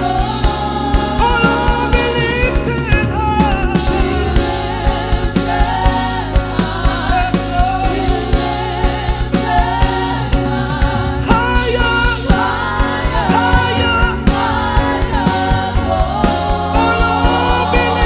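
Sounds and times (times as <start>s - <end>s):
gospel band playing: 0.0s - 18.0s
voices singing: 0.0s - 18.0s.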